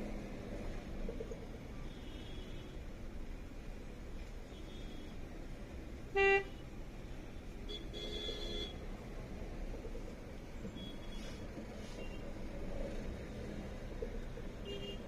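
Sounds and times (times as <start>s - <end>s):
road traffic: 0.0s - 15.0s
vehicle horns honking: 6.1s - 6.6s, 7.7s - 8.8s, 14.6s - 15.0s.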